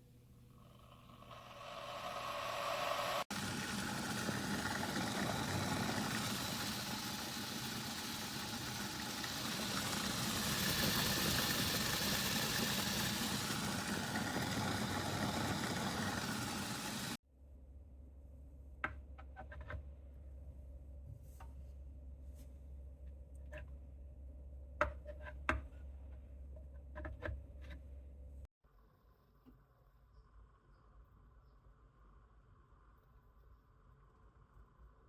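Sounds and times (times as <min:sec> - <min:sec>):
electric kettle heating water: 0:00.0 - 0:17.2.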